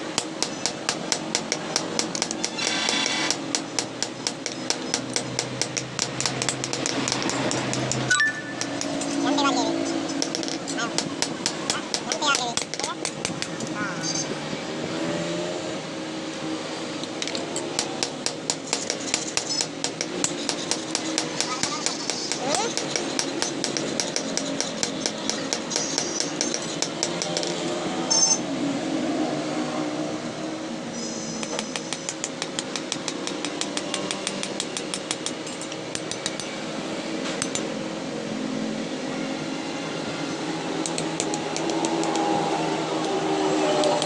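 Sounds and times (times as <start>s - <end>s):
hammer striking steel: 0.0s - 14.3s, 17.2s - 28.4s, 31.4s - 36.6s
mechanical hum: 0.0s - 44.0s.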